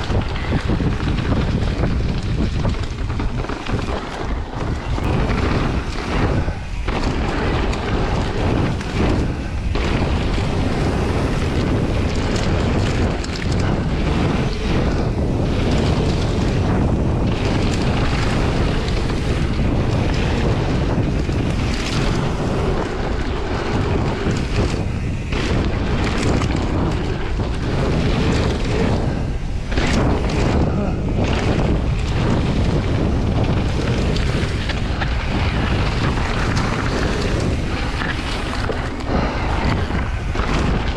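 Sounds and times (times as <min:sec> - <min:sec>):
bike rattling over rough trail: 0:00.0 - 0:40.9
wind buffeting microphone: 0:00.0 - 0:40.9.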